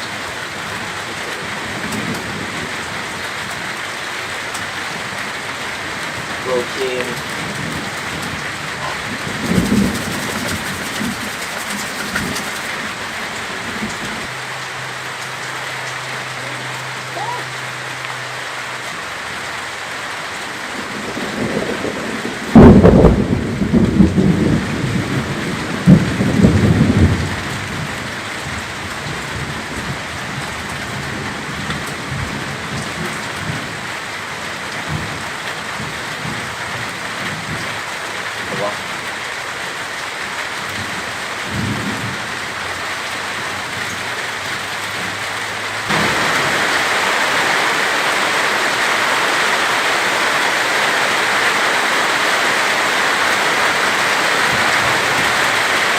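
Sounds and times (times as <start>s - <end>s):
heavy rain: 0.0s - 55.9s
thunderclap and rumbling thunder: 5.8s - 14.3s, 20.7s - 37.9s, 40.7s - 42.6s, 45.9s - 48.3s.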